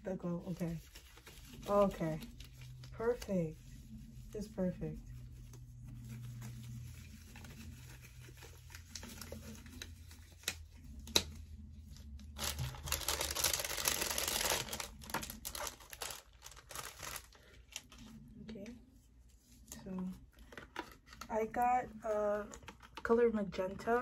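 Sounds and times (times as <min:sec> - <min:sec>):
plastic crinkling and tearing: 0:00.4 - 0:03.5, 0:05.2 - 0:18.2.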